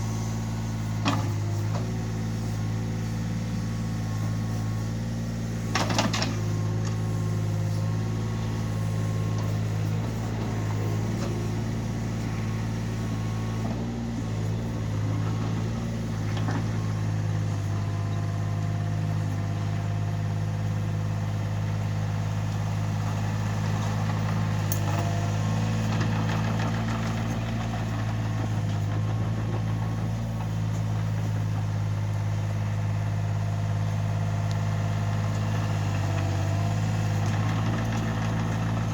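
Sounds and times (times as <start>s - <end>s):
diesel engine running: 0.0s - 38.9s.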